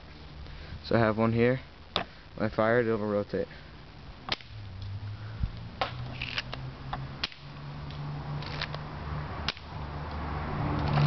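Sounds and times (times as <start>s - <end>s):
low steady hum: 0.0s - 10.0s
plastic toy gun clicks and snaps: 7.2s - 7.4s.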